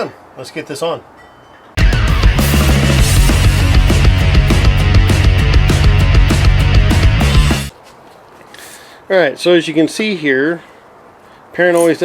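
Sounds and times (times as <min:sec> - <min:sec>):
loud rock music: 0:01.8 - 0:07.7.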